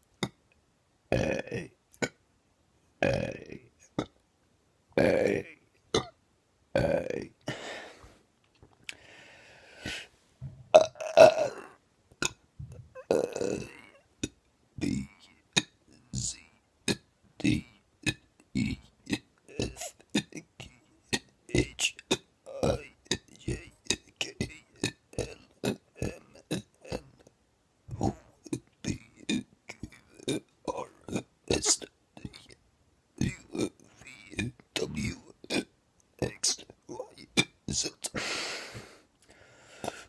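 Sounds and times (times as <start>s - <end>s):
person burping: 1.1s - 2.2s, 3.0s - 4.2s, 5.0s - 6.2s, 6.8s - 7.6s, 10.4s - 27.3s, 27.9s - 32.5s, 33.2s - 35.7s
faint breathy noise: 7.4s - 8.3s, 8.9s - 10.5s, 38.0s - 40.0s.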